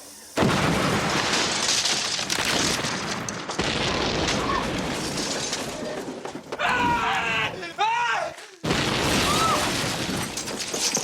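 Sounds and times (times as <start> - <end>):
house explosion blast: 0.4 - 6.2, 8.6 - 10.8
crashing debris: 0.4 - 7.3, 8.6 - 11.0.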